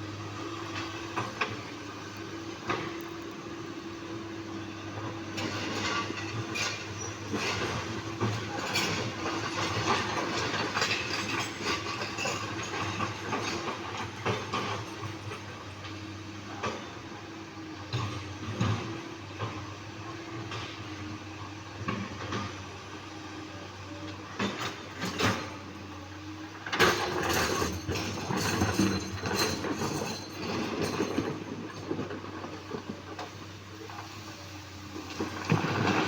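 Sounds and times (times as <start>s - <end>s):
excavator diesel engine running: 0.0s - 36.0s
boulders clattering and scraping: 26.8s - 36.0s.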